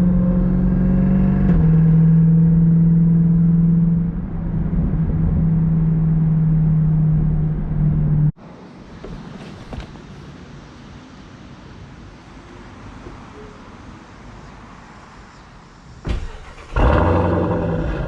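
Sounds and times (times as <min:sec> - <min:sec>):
wind noise: 0:04.0 - 0:08.3
engine droning: 0:16.1 - 0:18.0.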